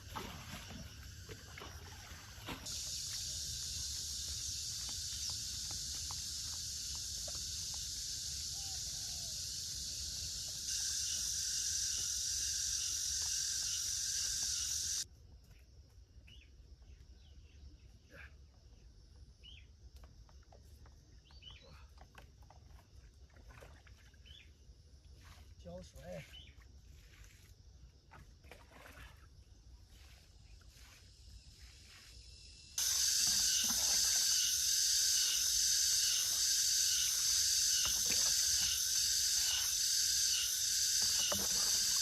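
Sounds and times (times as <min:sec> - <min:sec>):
cicadas buzzing: 0:00.0 - 0:15.1, 0:24.2 - 0:28.0, 0:29.4 - 0:42.0
faint bird chirps: 0:07.9 - 0:15.6, 0:16.2 - 0:19.7, 0:25.2 - 0:27.3.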